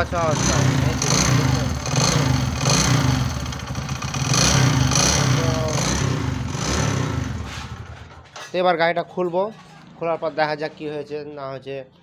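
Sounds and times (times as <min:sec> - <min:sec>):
engine knocking: 0:00.0 - 0:08.0
motorcycle engine running: 0:00.0 - 0:08.3.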